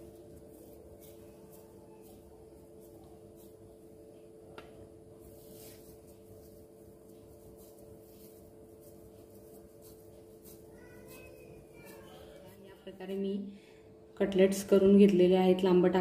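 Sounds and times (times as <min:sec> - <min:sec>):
hands squishing mashed potato: 0:00.0 - 0:12.7.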